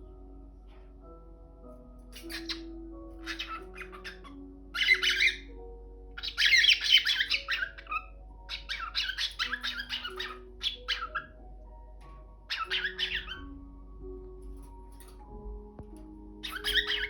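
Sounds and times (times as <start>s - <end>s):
background music with held notes: 0.0s - 17.0s
cockatiel squawking and chirping: 2.0s - 11.4s, 12.4s - 13.6s, 16.4s - 17.0s.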